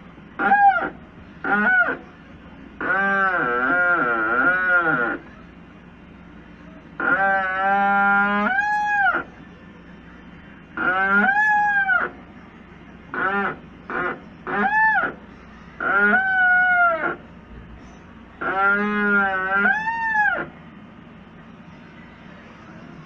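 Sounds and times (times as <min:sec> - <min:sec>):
washing machine squealing: 0:00.0 - 0:06.0, 0:06.6 - 0:21.0.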